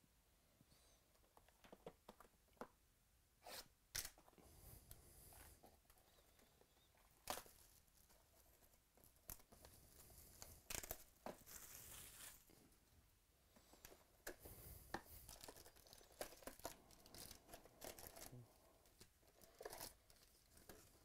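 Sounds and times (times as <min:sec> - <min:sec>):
wrappers tearing and crinkling: 0:10.7 - 0:12.5, 0:15.3 - 0:18.4.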